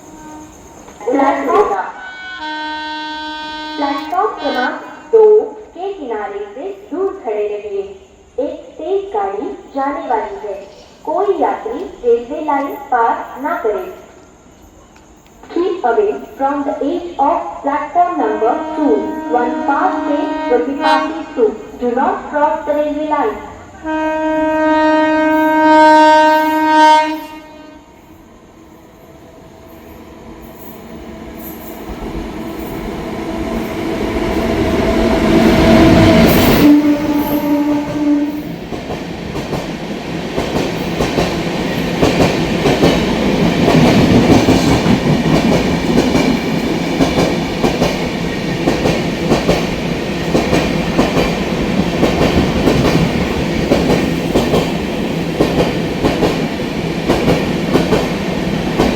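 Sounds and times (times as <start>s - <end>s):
train horn blowing: 0.0s - 5.1s, 18.2s - 21.4s, 23.8s - 28.1s, 33.6s - 38.6s
train passing at speed: 0.0s - 58.9s.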